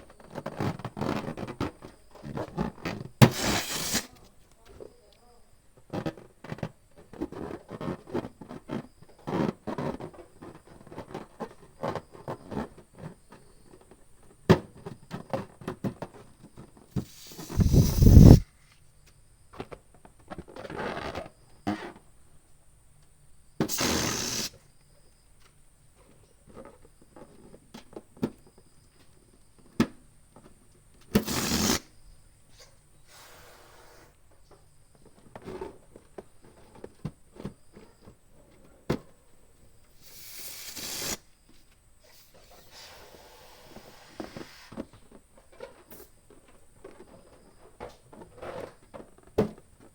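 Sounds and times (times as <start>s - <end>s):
rubbery balloon squeaks: 0.7s - 4.1s, 17.0s - 18.4s, 23.7s - 24.5s, 31.2s - 31.8s, 40.0s - 41.2s
air pump rushing air: 3.2s - 4.1s, 17.0s - 18.4s, 23.7s - 24.6s, 31.2s - 31.8s, 40.0s - 41.2s, 42.1s - 44.8s.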